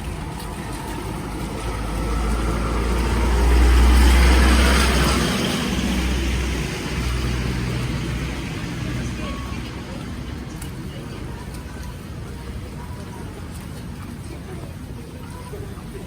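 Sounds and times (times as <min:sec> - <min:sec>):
road vehicle driving past: 0:00.0 - 0:12.0.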